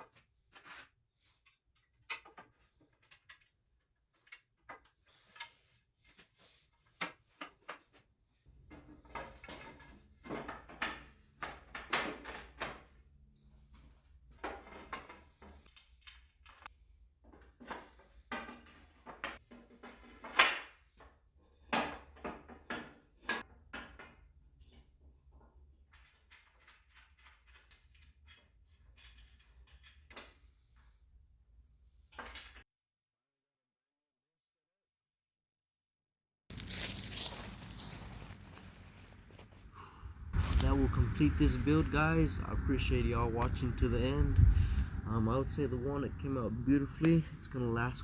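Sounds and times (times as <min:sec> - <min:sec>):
objects knocking and scraping: 0:04.1 - 0:30.5.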